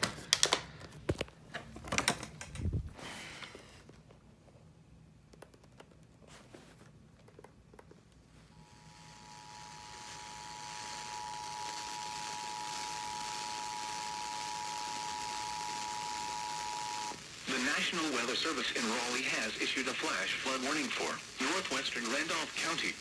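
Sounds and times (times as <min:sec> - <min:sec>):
radio hiss: 0:09.4 - 0:23.0.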